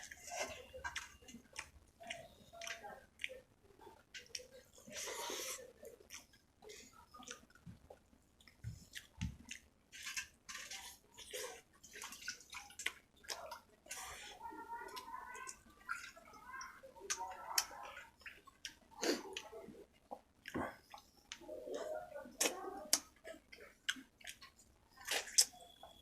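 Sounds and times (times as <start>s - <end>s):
wet chewing and lip smacking: 0.0s - 6.4s, 7.0s - 14.1s, 17.0s - 21.5s, 22.3s - 26.0s.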